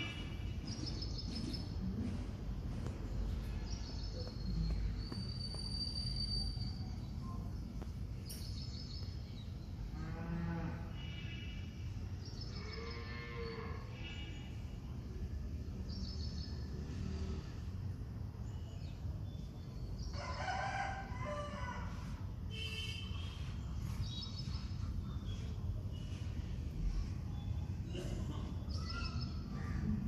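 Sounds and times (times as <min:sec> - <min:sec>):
high bird chirps: 0:04.1 - 0:07.6.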